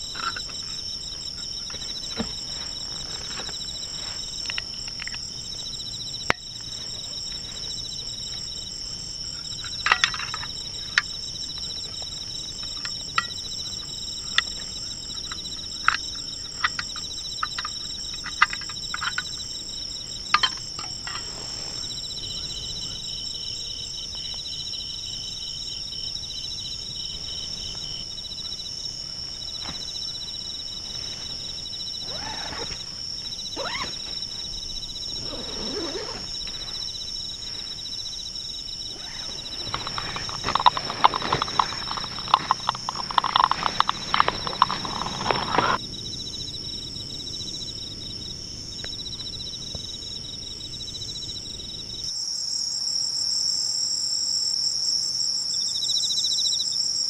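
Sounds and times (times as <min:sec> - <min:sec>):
soft rustling: 0:00.0 - 0:05.3, 0:20.2 - 0:22.8, 0:26.8 - 0:45.8
insects trilling: 0:00.0 - 0:57.0.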